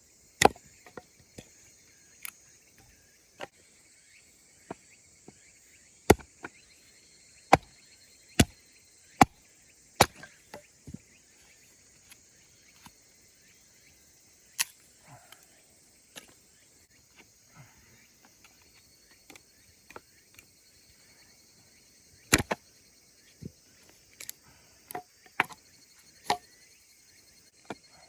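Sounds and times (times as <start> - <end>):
insects droning: 0.0 - 28.0
blade striking wood: 0.4 - 1.5, 6.1 - 6.3, 7.5 - 7.7, 10.0 - 11.0, 22.3 - 22.6, 24.9 - 25.6, 26.3 - 26.5.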